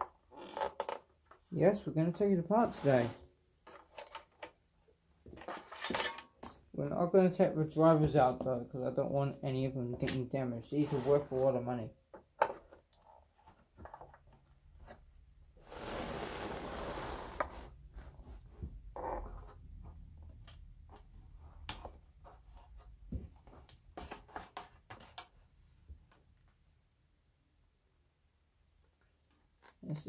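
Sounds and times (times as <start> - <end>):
speaker cover scraping: 2.6 - 3.2.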